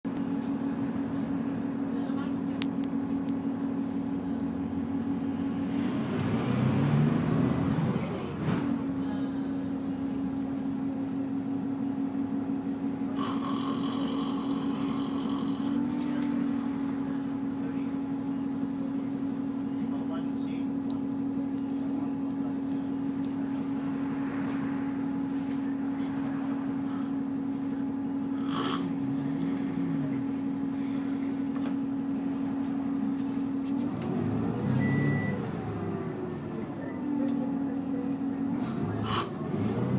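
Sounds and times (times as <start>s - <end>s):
bus engine drone: 0.1s - 39.9s
man snoring: 13.2s - 15.9s, 26.8s - 27.3s, 28.3s - 30.4s, 38.8s - 39.9s.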